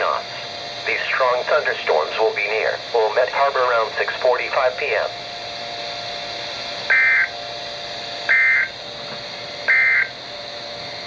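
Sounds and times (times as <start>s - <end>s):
radio receiver hiss: 0.0s - 7.4s
screechy digital tone bursts: 6.9s - 7.3s, 8.3s - 8.7s, 9.7s - 10.1s.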